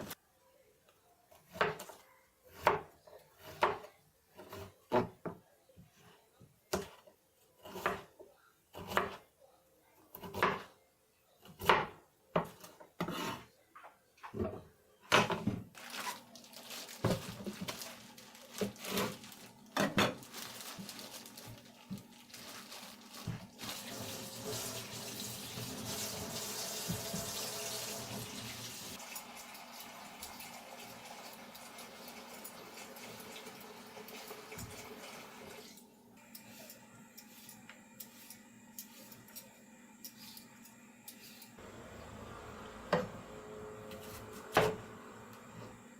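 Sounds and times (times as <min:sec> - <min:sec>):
tap water running into sink: 0:23.6 - 0:35.6.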